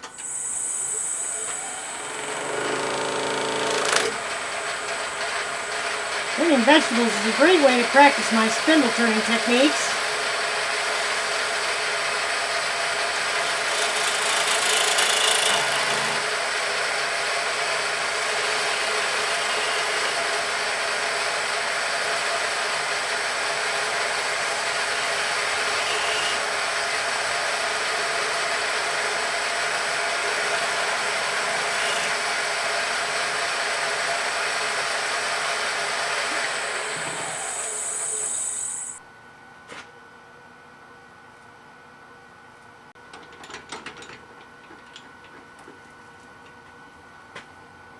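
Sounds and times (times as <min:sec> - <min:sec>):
wood lathe motor humming: 0:00.0 - 0:39.0
hissing: 0:36.1 - 0:39.0.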